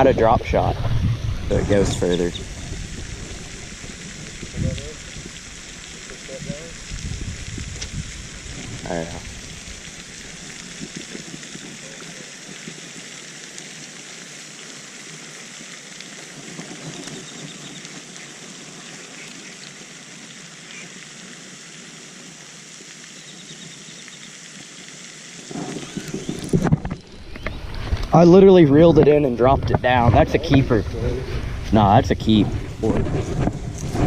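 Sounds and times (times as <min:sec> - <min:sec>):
rough low rumbling: 0:00.0 - 0:12.4, 0:25.4 - 0:34.0
steady outdoor hiss: 0:00.0 - 0:34.0.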